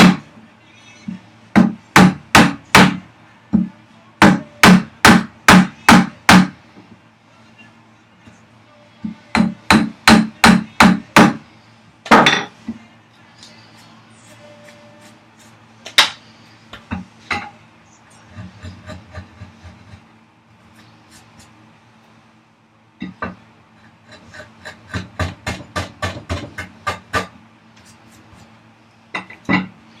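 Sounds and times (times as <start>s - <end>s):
mallet striking chisel into wood: 0.0s - 0.2s, 1.6s - 3.0s, 3.6s - 6.5s, 9.4s - 11.4s.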